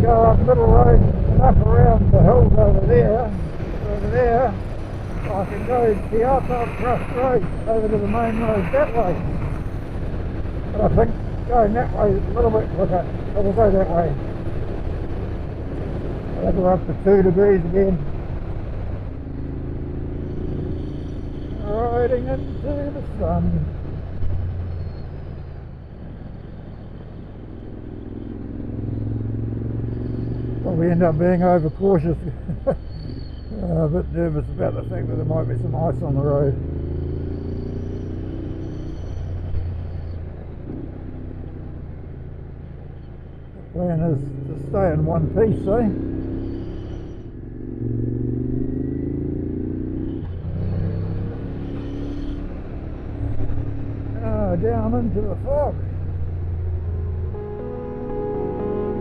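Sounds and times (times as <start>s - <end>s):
wind noise: 0.0s - 13.5s.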